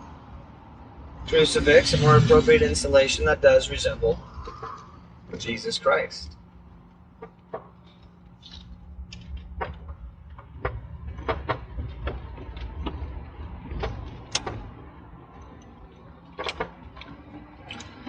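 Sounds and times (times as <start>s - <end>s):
vehicle interior rumble: 0.0s - 18.0s
sharp clicks and knocks: 6.9s - 14.7s.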